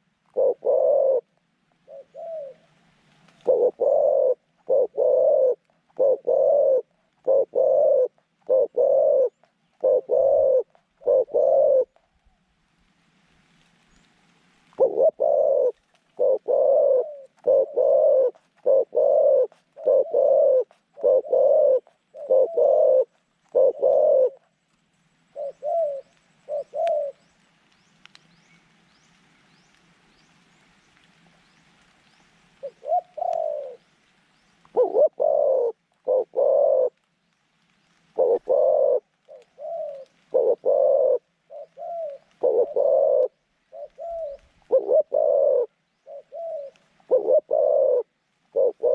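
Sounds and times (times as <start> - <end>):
dove cooing: 0.0 - 12.4, 14.7 - 24.6, 25.3 - 27.3, 32.6 - 34.0, 34.7 - 37.1, 38.1 - 48.9.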